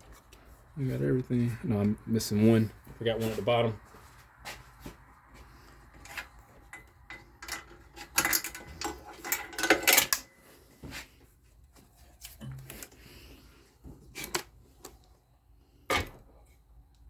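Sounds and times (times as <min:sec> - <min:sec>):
parts clattering: 0:05.9 - 0:11.1
hand tools clicking and clinking: 0:06.0 - 0:10.3.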